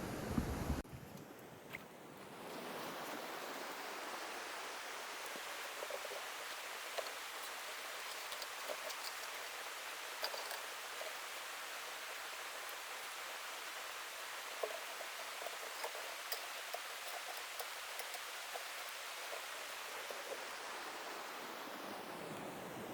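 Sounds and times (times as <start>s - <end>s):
running water: 1.9s - 22.9s
small water plinks and splashes: 5.2s - 20.6s.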